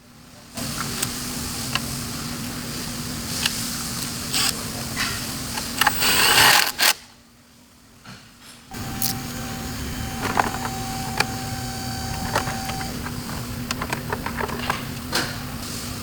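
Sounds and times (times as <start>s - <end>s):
small motor humming: 8.7s - 15.8s.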